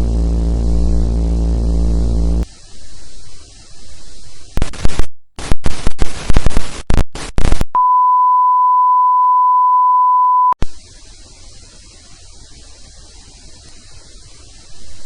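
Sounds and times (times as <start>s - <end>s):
harsh electronic static bursts: 0.0s - 2.5s, 4.6s - 7.6s
faint tape hiss: 0.0s - 4.1s
steady single-pitch beep: 7.8s - 10.6s.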